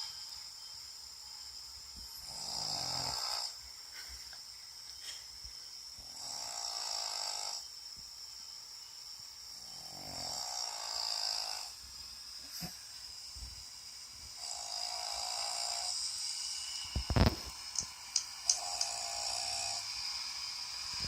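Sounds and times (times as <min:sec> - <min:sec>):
dog snoring: 0:02.2 - 0:03.5, 0:06.0 - 0:07.6, 0:09.6 - 0:11.7.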